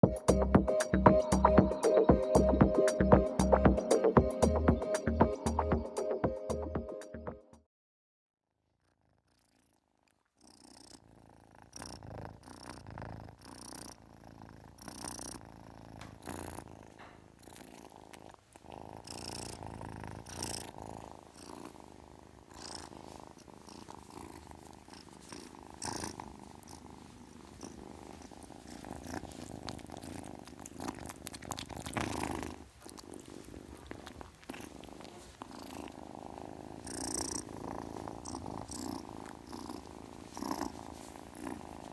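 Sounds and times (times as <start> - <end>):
kitten purring: 8.6 - 41.9.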